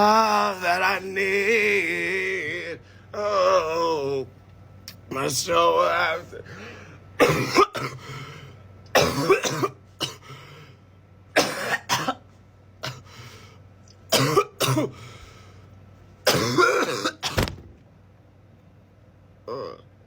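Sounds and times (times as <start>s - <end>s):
person coughing: 7.2s - 8.1s, 9.0s - 10.4s, 11.4s - 12.2s, 14.1s - 15.0s, 16.3s - 17.5s
low thump: 17.3s - 17.9s.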